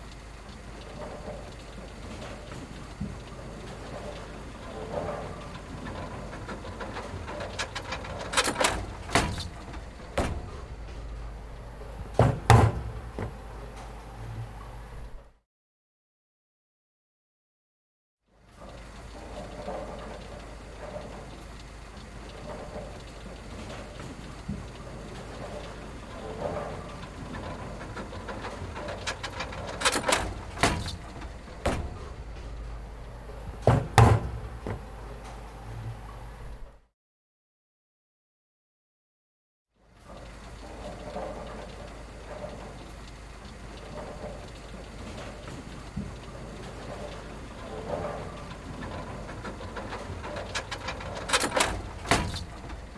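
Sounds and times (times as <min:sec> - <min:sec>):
steady low hum: 0:05.5 - 0:15.3, 0:27.1 - 0:36.8
sharp knocks and thuds: 0:07.8 - 0:13.8, 0:29.3 - 0:35.3.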